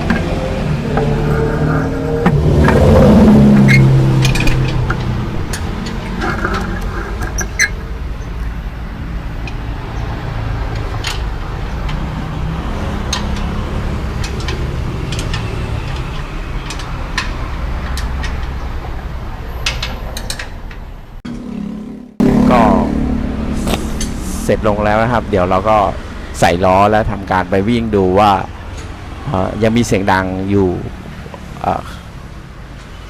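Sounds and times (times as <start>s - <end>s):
vehicle engine idling: 22.2s - 29.0s.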